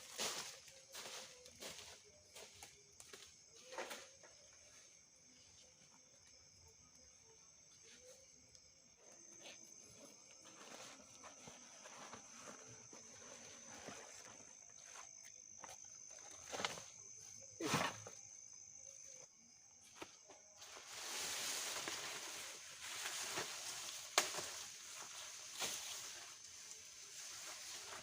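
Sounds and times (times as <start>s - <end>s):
footsteps rustling through leaves: 0.0s - 2.5s, 20.6s - 28.0s
high-pitched insect drone: 0.0s - 28.0s.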